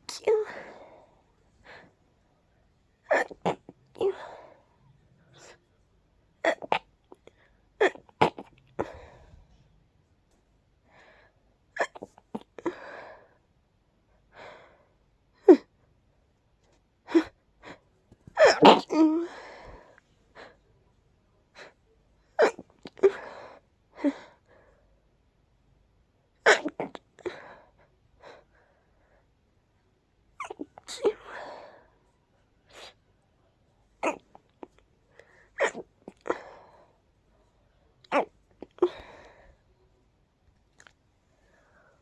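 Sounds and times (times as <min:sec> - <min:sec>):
person sneezing: 0:03.1 - 0:04.3, 0:18.3 - 0:19.5, 0:34.0 - 0:34.4, 0:35.6 - 0:36.7
breathy noise: 0:34.0 - 0:39.7.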